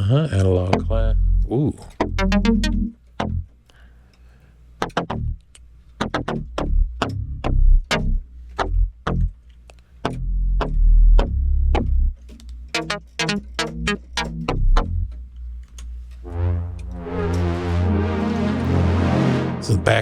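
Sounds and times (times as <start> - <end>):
held low bass notes: 0.0 - 3.5, 6.0 - 9.4, 10.0 - 12.2, 12.8 - 15.6, 16.2 - 20.0
plucky synthesizer notes: 2.0 - 3.5, 6.0 - 9.3, 10.1 - 15.2, 16.2 - 20.0.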